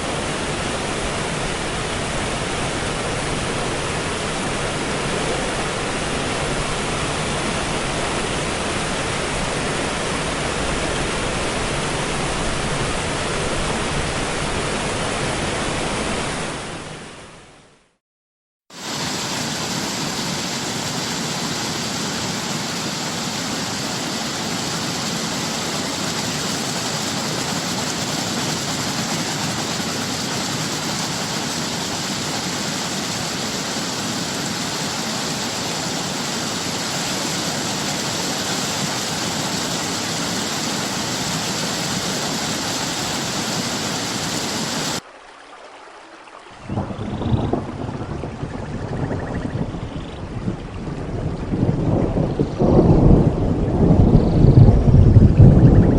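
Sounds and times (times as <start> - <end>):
waterfall rushing: 0.0 - 17.2, 18.7 - 45.1
wind: 0.0 - 17.9, 18.7 - 55.9.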